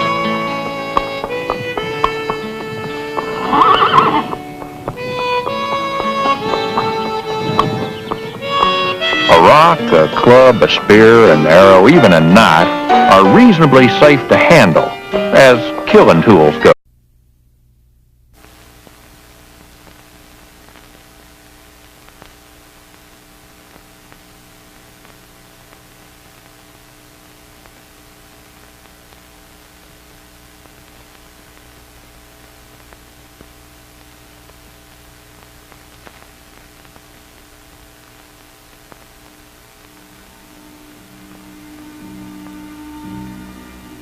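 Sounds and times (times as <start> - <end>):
steady hiss: 0.0 - 16.7, 18.2 - 44.0
electrical mains hum: 0.0 - 44.0
faint clicks: 0.6 - 9.4, 19.6 - 21.0, 21.8 - 23.0, 32.7 - 40.2.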